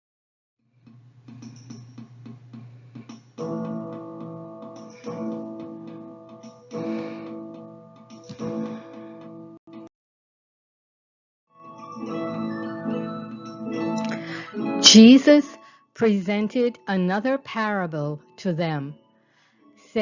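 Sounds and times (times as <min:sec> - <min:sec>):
acoustic guitar music: 0:11.8 - 0:15.5.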